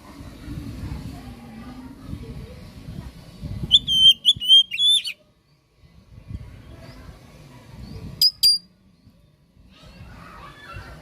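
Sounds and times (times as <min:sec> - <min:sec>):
bird singing whistled notes: 0:03.7 - 0:05.2, 0:07.8 - 0:09.4.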